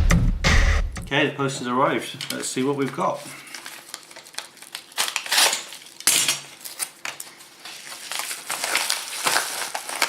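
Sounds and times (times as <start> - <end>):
packaging rustling and clattering: 2.2 - 10.0.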